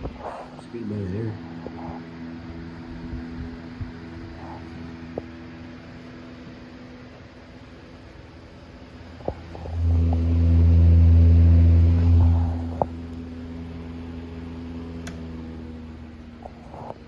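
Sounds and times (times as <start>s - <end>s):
fan motor humming: 0.0s - 17.0s
loud low hum: 0.0s - 17.0s
sharp clicks: 15.0s - 15.3s.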